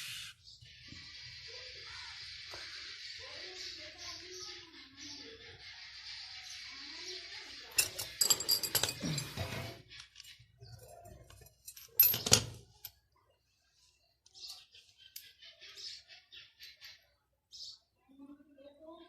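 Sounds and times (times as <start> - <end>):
metal tools clinking and knocking: 7.7 - 13.0.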